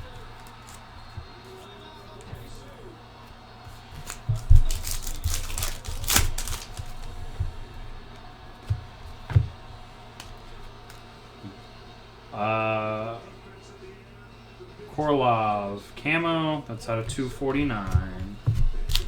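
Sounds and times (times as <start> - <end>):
card packs crinkling: 0.0 - 11.2, 15.0 - 19.0.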